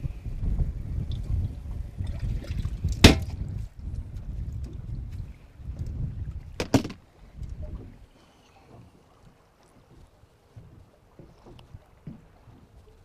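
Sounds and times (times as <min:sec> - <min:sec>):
wind rumble on microphone: 0:00.0 - 0:13.0
water sounds: 0:00.8 - 0:13.0.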